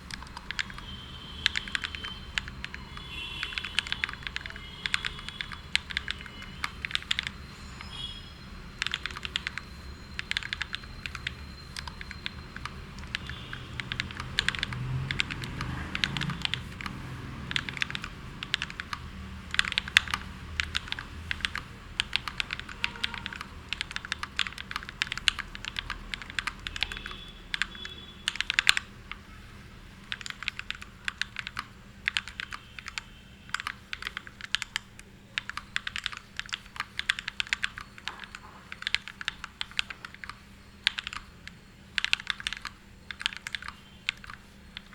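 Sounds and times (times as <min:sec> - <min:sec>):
mechanical keyboard key clacks: 0:10.2 - 0:29.2, 0:30.0 - 0:44.9.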